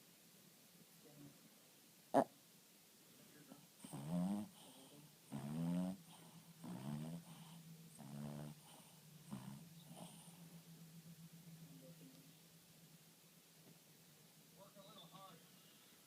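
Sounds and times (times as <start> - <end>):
pet snoring: 3.8 - 10.7.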